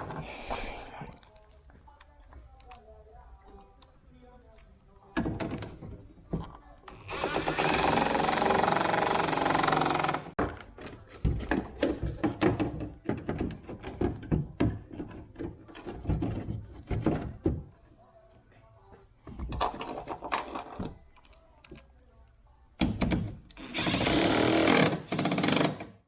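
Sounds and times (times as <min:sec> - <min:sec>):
knocks and clicks of parts: 0:22.8 - 0:23.5
harsh even tool noise: 0:23.6 - 0:25.9.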